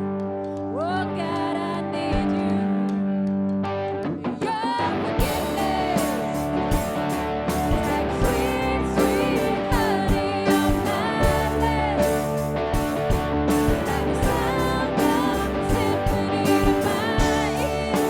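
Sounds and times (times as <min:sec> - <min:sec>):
person singing: 0:00.5 - 0:18.0
drum kit beat: 0:04.0 - 0:18.0
sustained band chords: 0:05.2 - 0:18.0.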